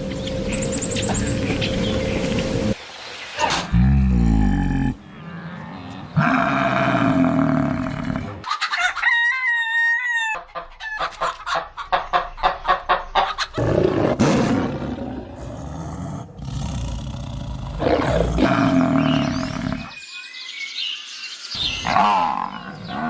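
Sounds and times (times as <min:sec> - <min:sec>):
farmyard sounds: 0:00.0 - 0:20.0
rooster crowing: 0:08.5 - 0:10.5
hens clucking: 0:10.2 - 0:13.6.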